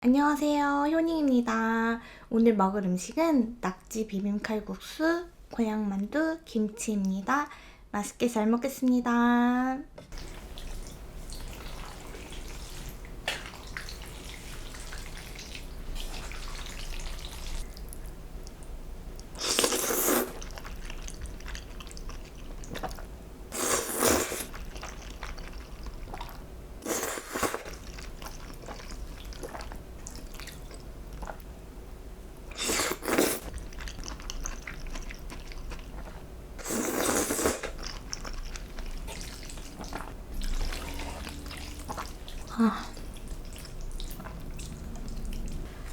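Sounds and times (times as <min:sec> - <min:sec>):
soft chewing: 0:10.1 - 0:31.5, 0:32.5 - 0:45.9
loud mouth and food sounds: 0:19.3 - 0:31.4, 0:32.5 - 0:45.9.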